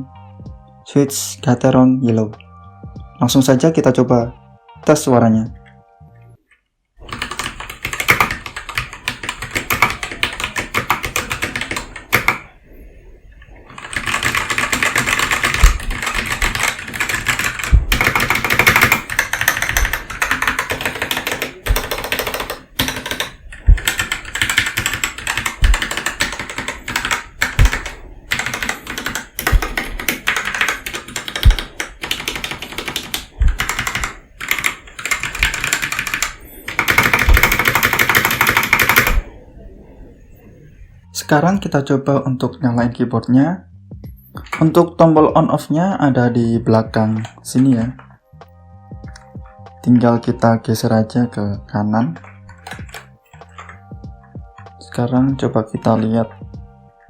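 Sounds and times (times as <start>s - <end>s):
mechanical keyboard typing: 7.0s - 12.5s, 13.7s - 39.3s, 52.3s - 53.8s
heavy low keyboard thud: 13.8s - 39.3s.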